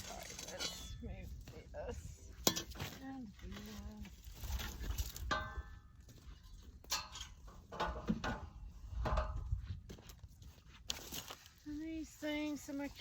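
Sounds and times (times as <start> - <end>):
objects knocking and scraping: 4.3 - 9.6
wind buffeting microphone: 8.4 - 10.6.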